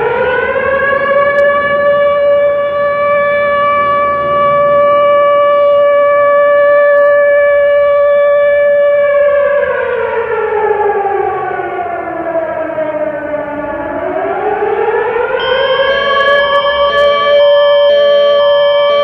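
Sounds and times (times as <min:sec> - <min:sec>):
siren wail: 0:00.0 - 0:19.0
pulsing higher tones: 0:15.4 - 0:19.0.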